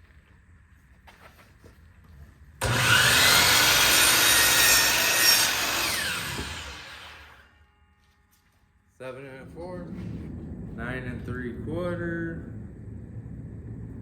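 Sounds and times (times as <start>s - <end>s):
power saw cutting wood: 2.6s - 7.6s.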